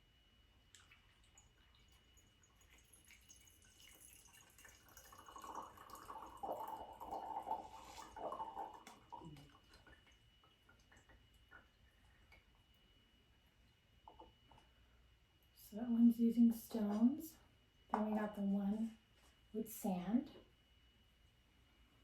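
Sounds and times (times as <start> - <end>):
muddy water pouring and trickling: 0.7 - 11.8.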